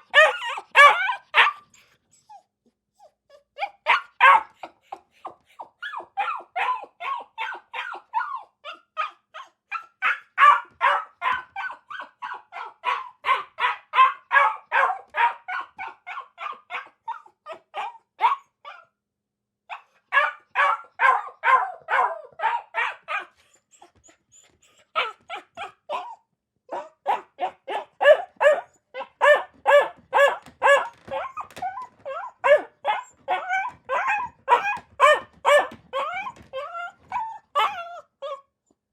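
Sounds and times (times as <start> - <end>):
dog barking rapidly: 0.1 - 1.6, 3.9 - 4.5, 10.0 - 16.9, 20.1 - 23.3, 26.7 - 31.6, 32.4 - 36.3.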